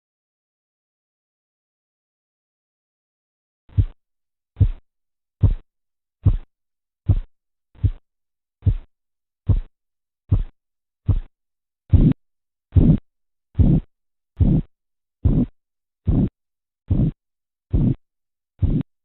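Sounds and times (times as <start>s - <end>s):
dull pulse thumps through stethoscope: 3.7s - 4.0s, 4.6s - 4.8s, 5.4s - 8.9s, 9.5s - 9.7s, 10.3s - 11.3s, 11.9s - 18.0s, 18.6s - 19.0s.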